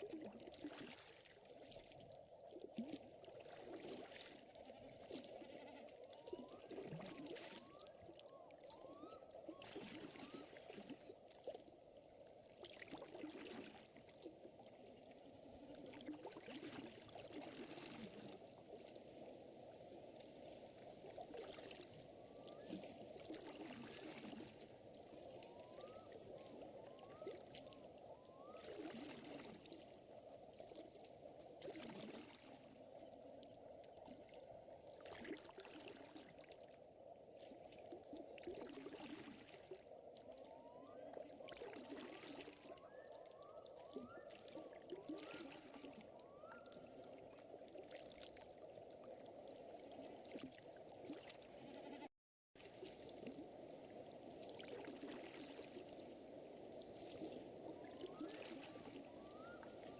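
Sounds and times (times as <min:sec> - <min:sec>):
lake water lapping: 0:20.1 - 0:33.0, 0:52.6 - 0:59.9.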